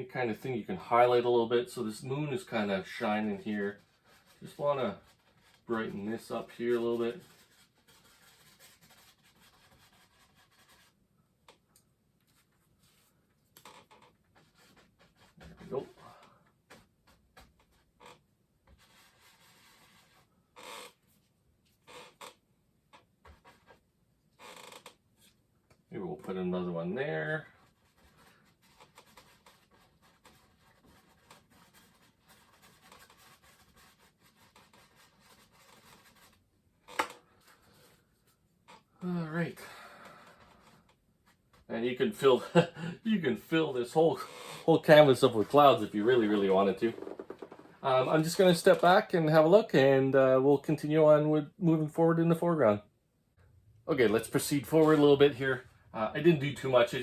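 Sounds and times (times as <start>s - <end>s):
paintbrush scrubbing on canvas: 1.9s - 11.0s, 27.4s - 36.4s.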